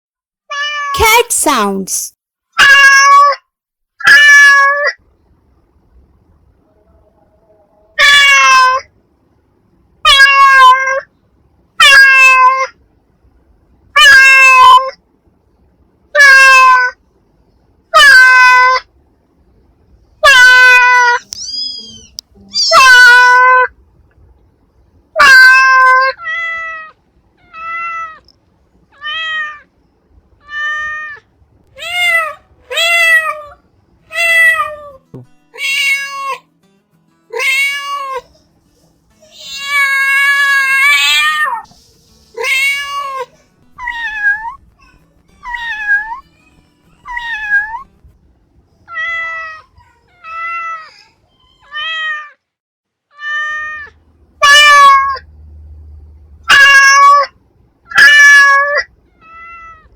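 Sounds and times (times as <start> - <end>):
cat meowing: 2.6 - 3.4, 8.0 - 8.9, 10.1 - 11.1, 11.8 - 12.7, 14.0 - 14.9, 16.2 - 17.0, 18.0 - 18.8, 20.2 - 23.7, 25.2 - 28.2, 29.0 - 29.6, 30.4 - 31.2, 39.2 - 41.6, 42.4 - 46.2, 46.9 - 47.9, 48.9 - 52.4, 53.1 - 55.2, 56.5 - 57.3, 57.9 - 59.9.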